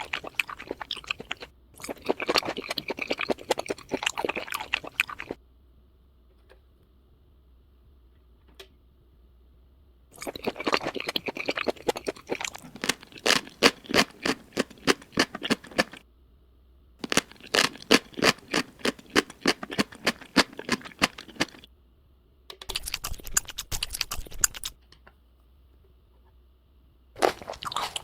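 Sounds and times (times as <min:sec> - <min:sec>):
crunchy chewing: 0:00.0 - 0:05.4, 0:10.2 - 0:16.0, 0:17.0 - 0:21.7, 0:22.7 - 0:24.7, 0:27.2 - 0:28.0.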